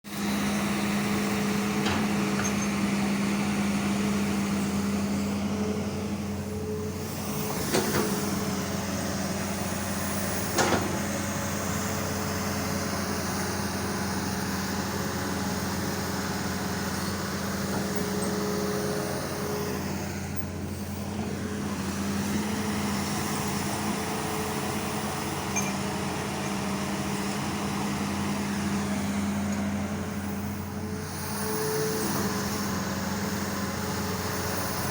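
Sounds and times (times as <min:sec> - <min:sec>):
excavator diesel engine running: 0:00.1 - 0:34.9.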